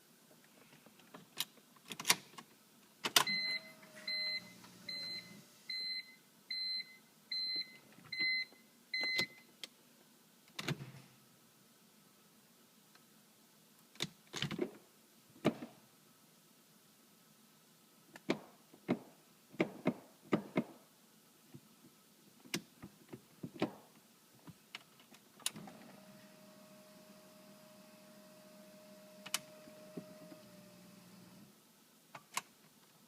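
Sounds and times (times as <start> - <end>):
electric pump humming: 25.6 - 31.5.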